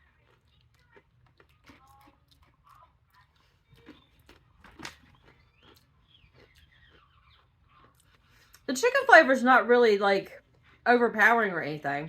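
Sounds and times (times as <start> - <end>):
crunching and chewing snack: 0.0 - 8.7.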